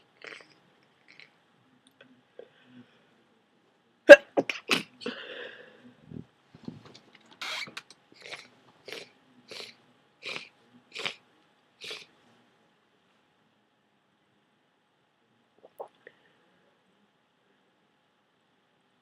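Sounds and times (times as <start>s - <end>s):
person sneezing: 4.1s - 5.3s
congested nasal breaths: 8.2s - 11.2s, 11.8s - 12.1s.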